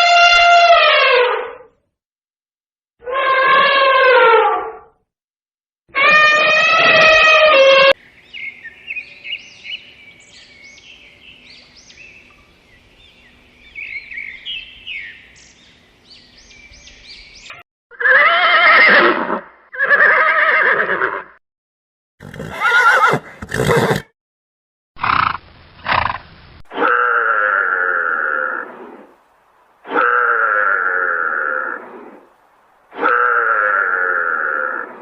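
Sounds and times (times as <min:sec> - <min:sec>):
birds chirping and singing: 0:08.0 - 0:17.6.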